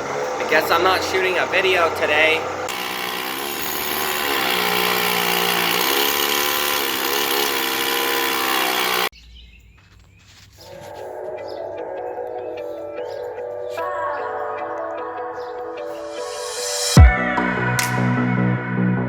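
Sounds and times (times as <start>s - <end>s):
power tool whining: 0.0s - 9.1s
soft music: 10.7s - 19.0s.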